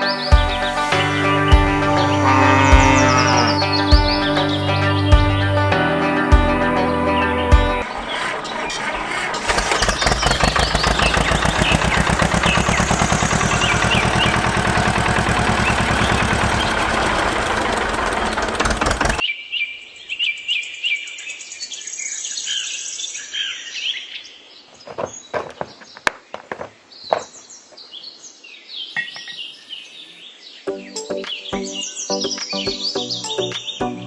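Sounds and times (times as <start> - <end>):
birds chirping: 0.0 - 19.2, 24.6 - 34.0
small engine chattering: 7.8 - 19.2.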